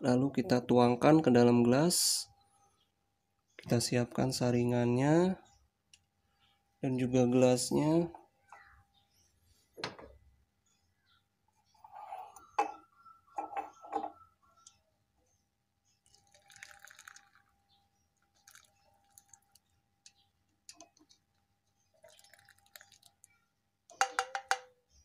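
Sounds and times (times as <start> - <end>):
liquid pouring into a glass: 16.0 - 19.8, 21.8 - 23.3
utensils knocking on glass: 24.0 - 24.7.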